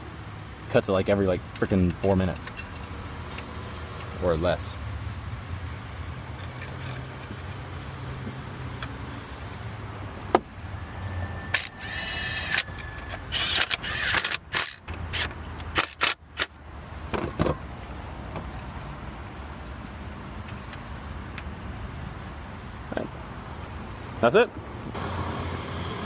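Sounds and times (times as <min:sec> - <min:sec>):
tools clicking and knocking: 0:01.4 - 0:04.2, 0:06.3 - 0:08.9, 0:11.5 - 0:16.5
short squeal: 0:10.4 - 0:13.3.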